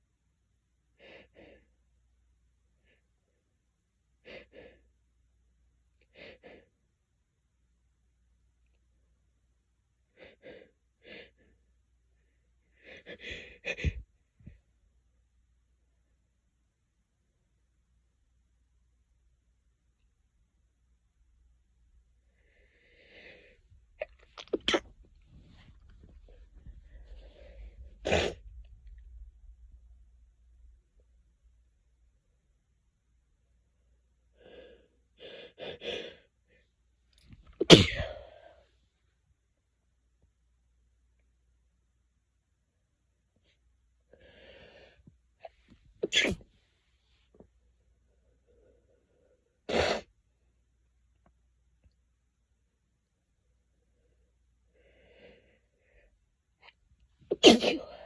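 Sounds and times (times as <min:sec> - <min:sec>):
person sneezing: 0:24.4 - 0:24.9, 0:28.1 - 0:28.4, 0:37.6 - 0:38.5, 0:46.0 - 0:46.4, 0:49.7 - 0:50.1, 0:57.3 - 0:58.0.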